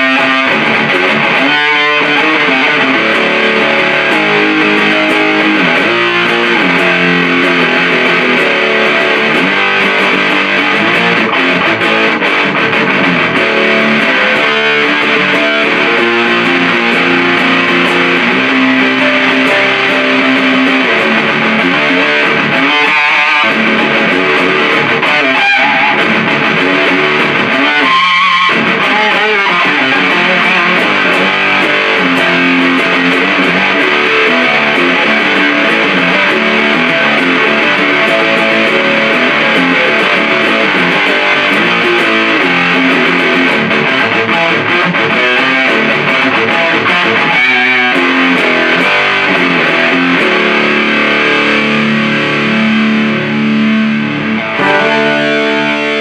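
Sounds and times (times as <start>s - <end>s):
fuzz-distorted electric guitar riffs: 0.0s - 56.0s.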